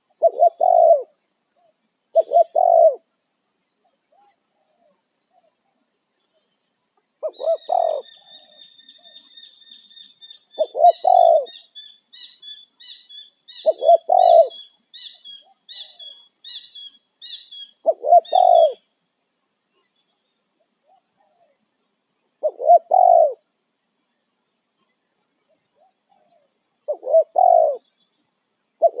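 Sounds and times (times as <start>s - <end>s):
dove cooing: 0.1s - 1.1s, 2.2s - 3.0s, 7.2s - 9.2s, 10.6s - 11.7s, 13.6s - 14.7s, 17.8s - 18.8s, 22.4s - 23.4s, 26.9s - 27.8s, 28.8s - 29.0s.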